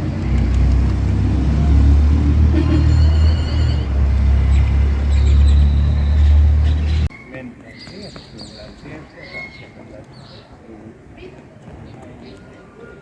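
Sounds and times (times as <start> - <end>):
vehicle low rumble: 0.0 - 7.1.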